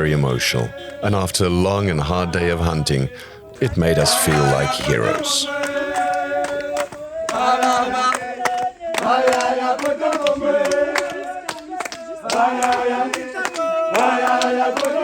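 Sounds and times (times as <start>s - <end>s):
group singing in chorus: 0.0s - 1.2s, 2.1s - 15.0s
hand clapping: 4.3s - 15.0s.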